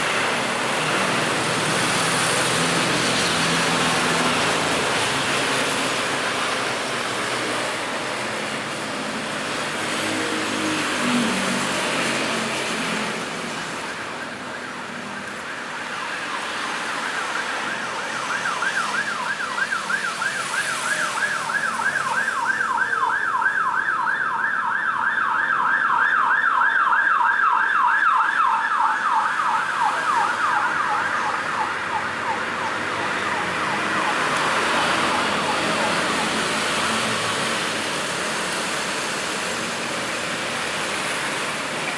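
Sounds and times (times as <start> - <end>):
road traffic noise: 0.0 - 41.9
emergency siren yelping: 8.6 - 39.5.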